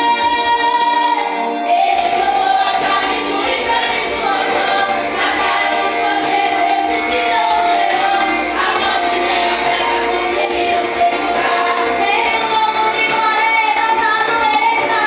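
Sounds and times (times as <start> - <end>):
group singing a hymn: 0.0 - 15.0
instrumental accompaniment: 0.0 - 15.0.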